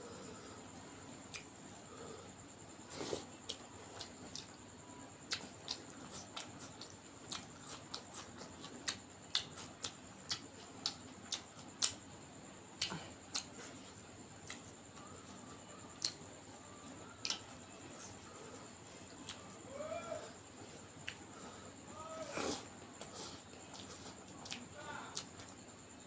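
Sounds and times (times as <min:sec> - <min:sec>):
wet mouth clicks of chewing: 0:01.3 - 0:01.5, 0:03.1 - 0:04.6, 0:05.3 - 0:12.0, 0:12.8 - 0:13.8, 0:14.4 - 0:15.1, 0:16.0 - 0:16.3, 0:17.2 - 0:18.2, 0:19.2 - 0:19.4, 0:21.0 - 0:21.2, 0:22.4 - 0:25.6.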